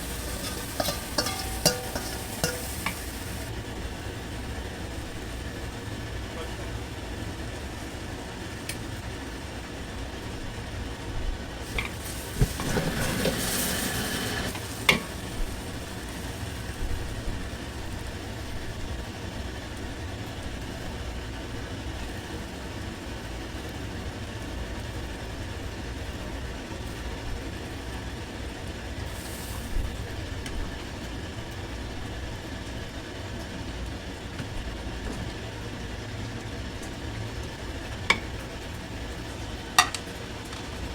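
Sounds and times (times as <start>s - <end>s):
metal clanks from wok: 0.0s - 3.5s, 11.6s - 17.0s, 38.1s - 38.5s, 39.8s - 40.7s
wok sizzling hiss: 0.0s - 6.0s, 11.4s - 19.1s, 29.0s - 31.0s
low rumble of burners and extraction: 0.0s - 40.9s.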